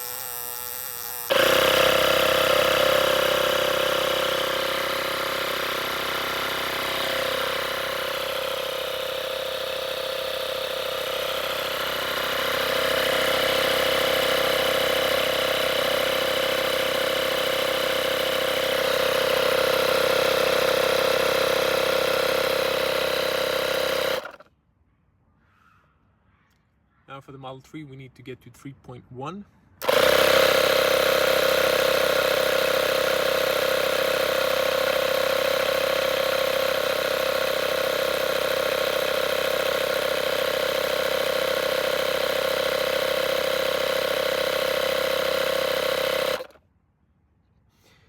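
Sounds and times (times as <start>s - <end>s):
electric air compressor humming: 0.0s - 24.5s, 29.8s - 46.6s.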